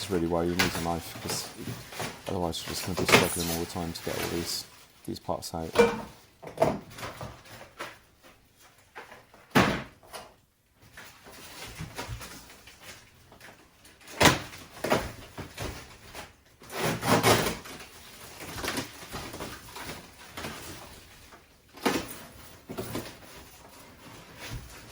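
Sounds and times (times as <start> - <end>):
cardboard being cut and torn: 16.6 - 20.7.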